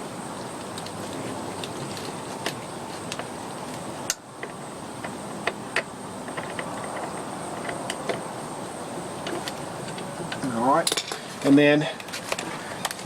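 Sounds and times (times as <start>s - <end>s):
steady hiss: 0.0s - 13.0s
wrench and metal parts clinking: 10.8s - 11.6s.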